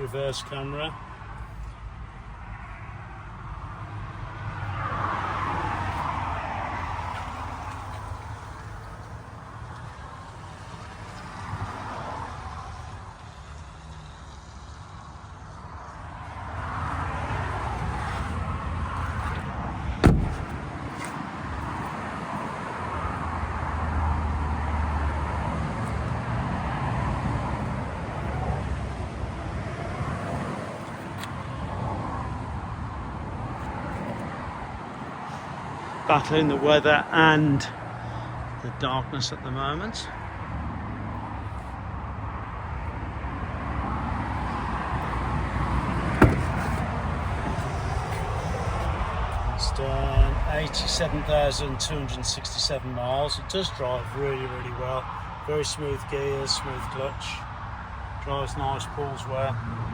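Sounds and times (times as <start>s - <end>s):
vehicle low rumble: 12.4s - 35.8s, 40.0s - 57.4s
loud sharp thump: 20.0s - 20.7s, 46.1s - 48.2s
steady low rumble: 47.0s - 53.8s.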